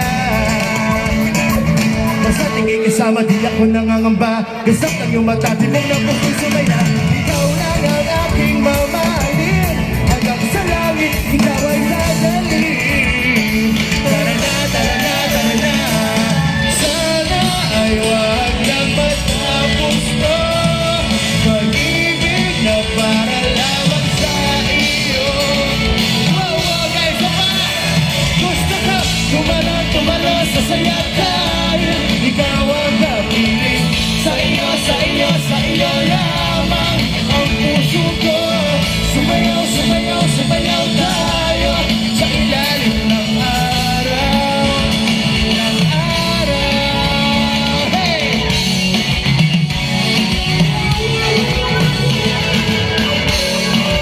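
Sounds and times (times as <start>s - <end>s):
people shouting: 0.0s - 2.9s, 14.1s - 18.0s
person singing: 0.0s - 54.0s
pop-rock band playing: 0.0s - 54.0s.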